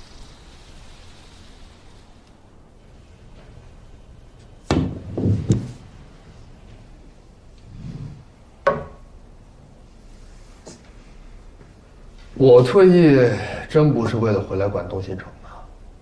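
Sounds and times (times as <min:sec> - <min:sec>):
sharp knocks: 0:04.6 - 0:05.9, 0:08.6 - 0:09.1.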